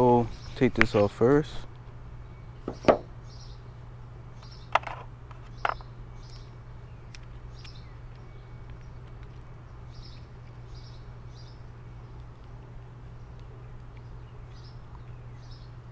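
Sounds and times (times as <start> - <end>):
steady low hum: 0.0 - 15.9
sharp plastic clicks: 7.1 - 9.5.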